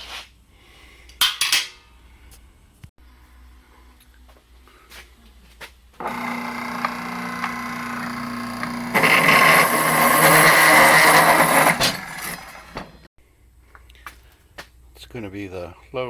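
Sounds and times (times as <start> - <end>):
power tool cutting metal: 6.0 - 13.0.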